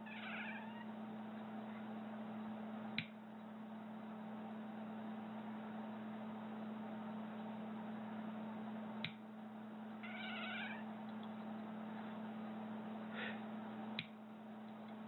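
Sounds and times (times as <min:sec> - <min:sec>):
cat meowing: 0:00.0 - 0:00.9, 0:10.0 - 0:10.9.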